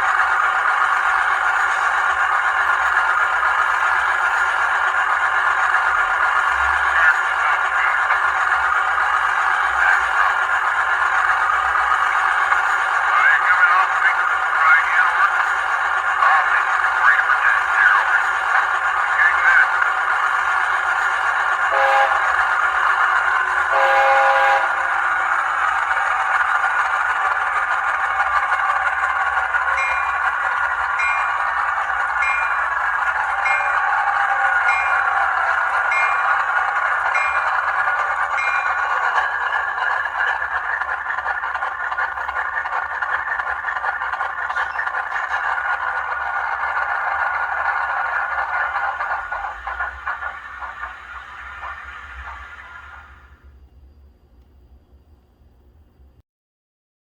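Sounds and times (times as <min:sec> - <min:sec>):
diesel locomotive engine running: 0:00.0 - 0:54.2
locomotive horn blowing: 0:21.7 - 0:25.2
bell ringing: 0:27.6 - 0:41.2.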